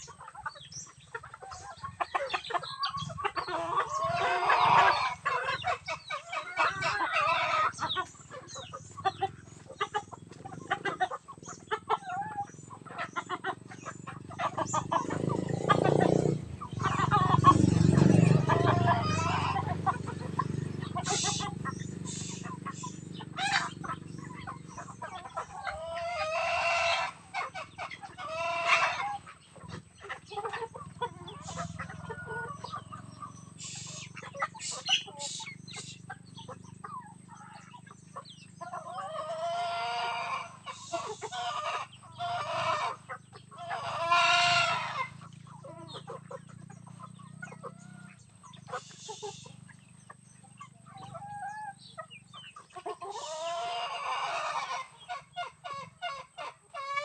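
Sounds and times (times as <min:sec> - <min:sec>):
chickens clucking: 0:00.0 - 0:57.0
rooster crowing: 0:18.3 - 0:19.8.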